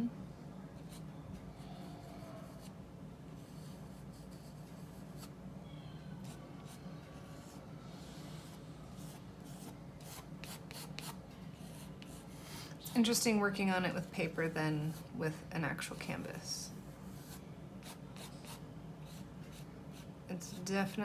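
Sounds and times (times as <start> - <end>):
low steady hum: 0.0 - 21.0
paintbrush scratching on paper: 3.4 - 5.3, 17.1 - 20.7.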